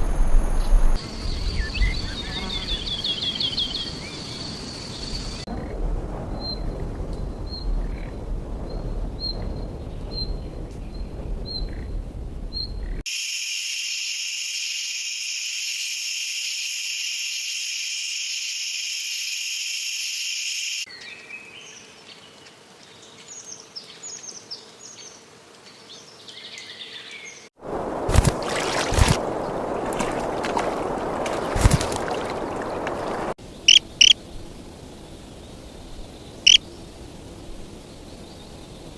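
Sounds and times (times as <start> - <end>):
low wind-like rumble: 0.0 - 13.0, 27.6 - 38.9
songbirds chirping: 0.5 - 5.5, 20.9 - 27.5, 28.6 - 38.9
buzzing insect chorus: 13.1 - 27.2, 28.5 - 38.9.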